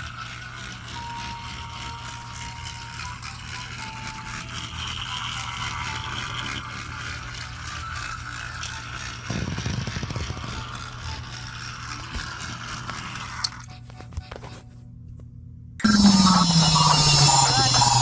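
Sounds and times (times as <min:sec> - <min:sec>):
toy train motor whirring: 0:00.0 - 0:14.0, 0:15.8 - 0:18.0.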